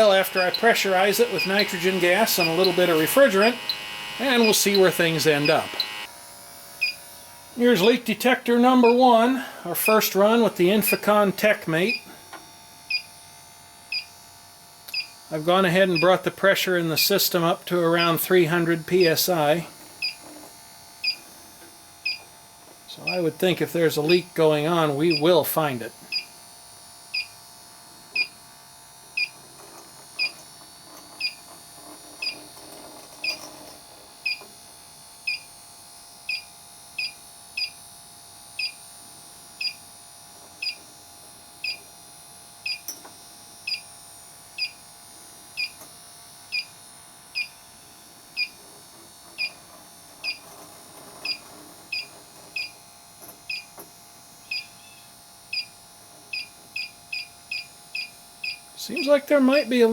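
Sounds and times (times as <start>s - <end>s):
leak detector beeping: 0.0s - 6.1s, 6.8s - 7.0s, 7.6s - 12.2s, 12.9s - 13.1s, 13.9s - 14.1s, 14.9s - 15.2s, 15.9s - 16.2s, 18.0s - 20.2s, 21.0s - 21.3s, 22.0s - 22.3s, 23.0s - 23.3s, 24.0s - 26.4s, 27.1s - 27.4s, 28.2s - 28.4s, 29.2s - 29.4s, 31.2s - 31.5s, 33.2s - 33.5s, 34.2s - 34.4s, 35.2s - 35.5s, 36.3s - 37.8s, 38.6s - 38.8s, 39.6s - 39.8s, 40.6s - 40.8s, 41.6s - 41.9s, 42.6s - 43.0s, 43.6s - 43.9s, 44.6s - 44.8s, 45.6s - 45.8s, 46.5s - 47.6s, 48.4s - 48.6s, 49.4s - 49.6s, 50.2s - 50.5s, 51.2s - 52.8s, 53.5s - 53.8s, 54.4s - 59.9s.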